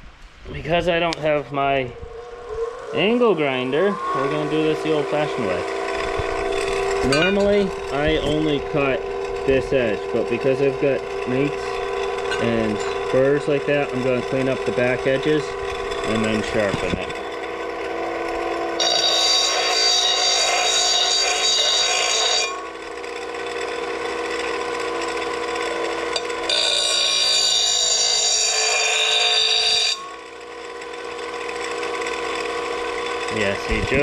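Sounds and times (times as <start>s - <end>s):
electric grinder motor running: 1.0s - 34.0s
metal blade grinding on wheel: 1.0s - 34.0s.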